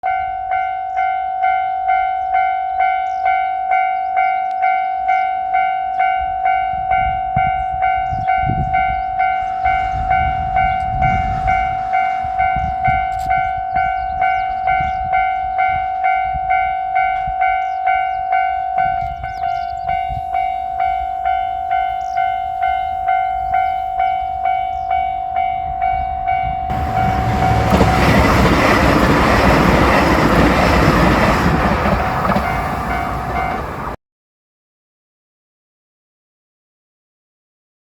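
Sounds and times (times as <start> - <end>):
level crossing alarm bell: 0.0 - 33.9
diesel train passing: 7.0 - 34.0.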